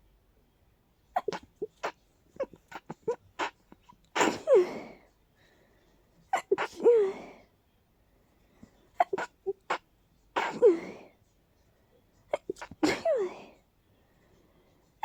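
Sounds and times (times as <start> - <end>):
person sneezing: 4.2 - 5.0, 6.3 - 7.4, 10.4 - 11.1, 12.3 - 13.5.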